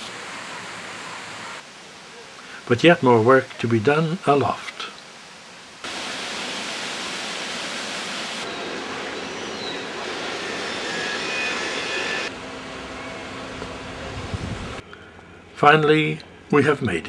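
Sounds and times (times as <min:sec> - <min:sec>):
steady rushing noise: 0:05.8 - 0:14.8.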